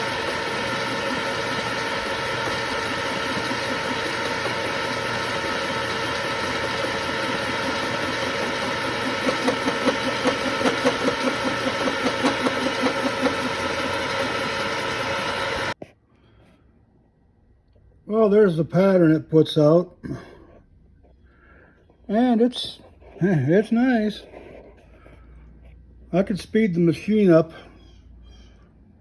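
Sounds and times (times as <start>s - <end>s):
milling machine hum: 0.0s - 15.8s
regular pulsing of cutter: 0.0s - 15.8s.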